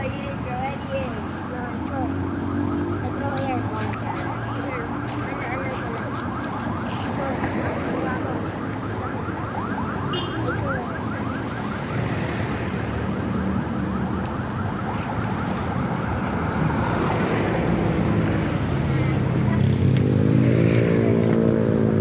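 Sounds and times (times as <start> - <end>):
vehicle engines rumbling: 0.0 - 22.0.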